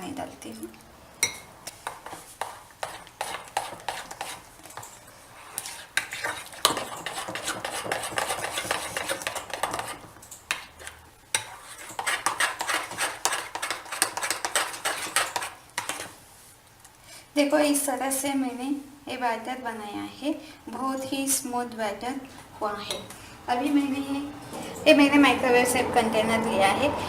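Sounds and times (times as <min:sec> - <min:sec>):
utensil stirring batter in bowl: 0:01.2 - 0:16.7.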